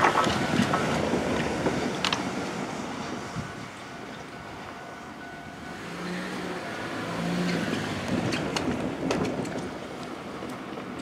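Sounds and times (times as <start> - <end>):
vehicle passing close by: 5.7 - 10.3.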